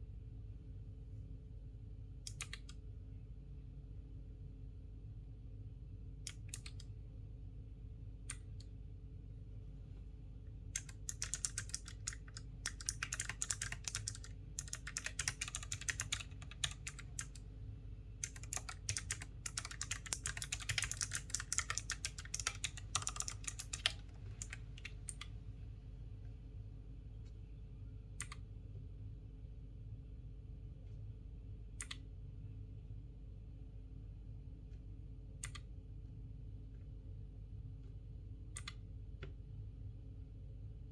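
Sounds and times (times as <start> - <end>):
mechanical keyboard key clicks: 10.8 - 17.4, 18.2 - 25.3.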